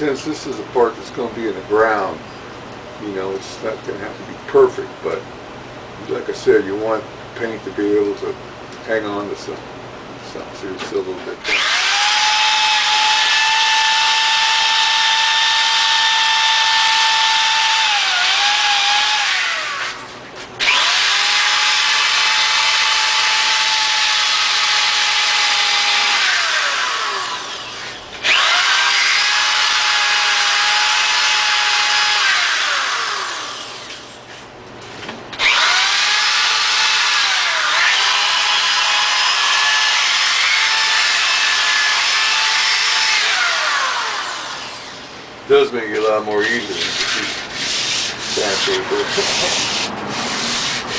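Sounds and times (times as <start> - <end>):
electric drill motor whine: 11.4 - 34.2, 35.4 - 45.2
wire brush scraping metal: 46.4 - 50.9.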